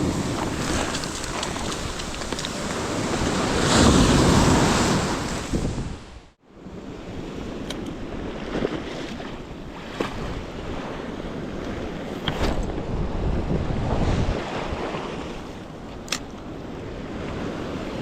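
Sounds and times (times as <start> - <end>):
surf washing onto beach: 0.0 - 6.0
wind buffeting microphone: 9.5 - 15.9.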